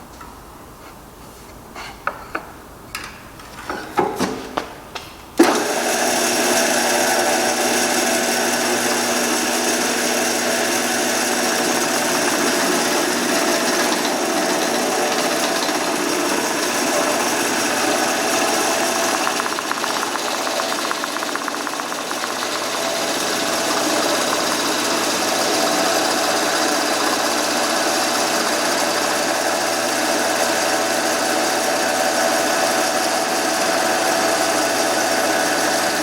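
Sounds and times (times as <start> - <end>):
wood knocking: 3.6 - 5.1
woodworking power tool running: 5.4 - 36.0.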